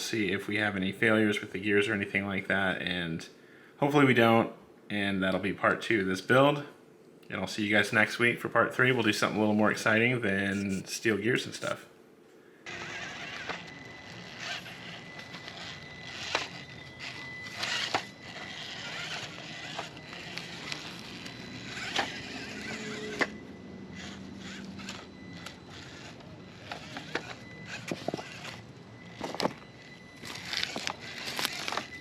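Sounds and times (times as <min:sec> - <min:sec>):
toy car drivetrain whine: 0:12.6 - 0:32.0
tyres crunching over gravel: 0:24.0 - 0:32.0.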